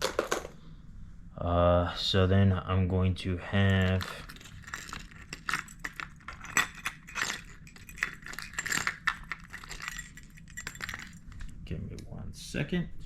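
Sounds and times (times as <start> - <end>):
fishing lures clinking in plastic box: 0.0 - 0.5, 3.7 - 11.6.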